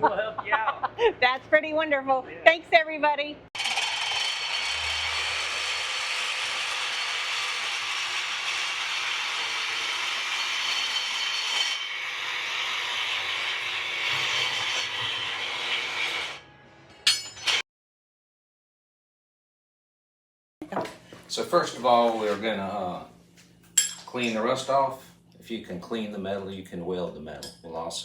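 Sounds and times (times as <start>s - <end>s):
power saw cutting metal: 3.6s - 16.5s, 17.1s - 17.6s
sharp metallic clanks: 16.9s - 17.6s.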